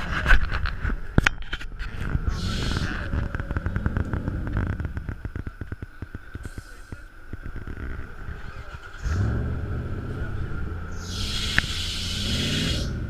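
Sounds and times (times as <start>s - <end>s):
loud low engine running: 7.9s - 13.0s.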